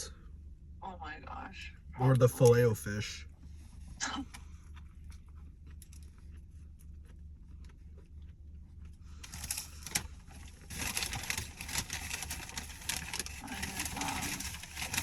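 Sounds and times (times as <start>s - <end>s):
paper wrapper crinkling and tearing: 9.2s - 15.0s.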